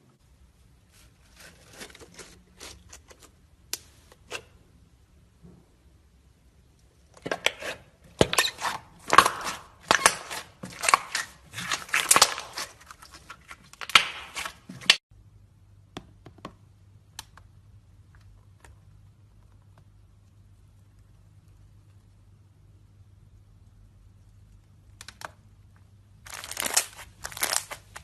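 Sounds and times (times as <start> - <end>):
slime squelching and popping: 7.2 - 15.0.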